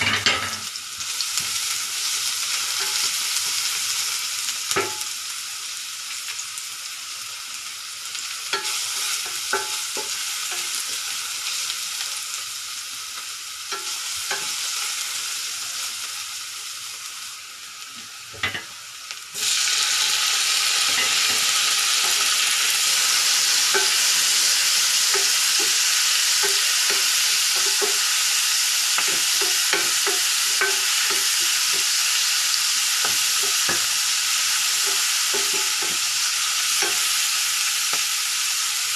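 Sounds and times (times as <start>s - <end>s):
meat sizzling in a frying pan: 0.0s - 38.9s
utensil tapping and scraping pan: 8.6s - 11.0s, 13.7s - 14.7s, 20.9s - 22.4s, 23.7s - 24.2s, 25.0s - 28.1s, 29.0s - 32.0s, 34.8s - 37.2s.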